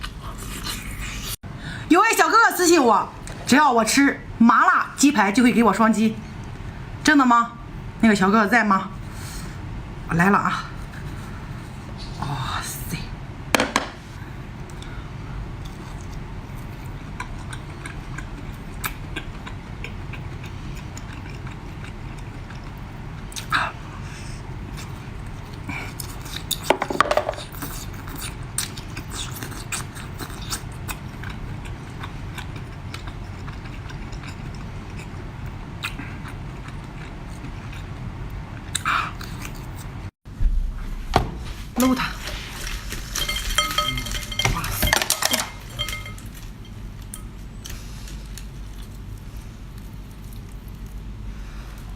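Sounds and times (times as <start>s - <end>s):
person chewing food: 15.6s - 23.5s, 27.4s - 40.0s, 48.0s - 51.9s
steady low hum: 27.4s - 51.9s.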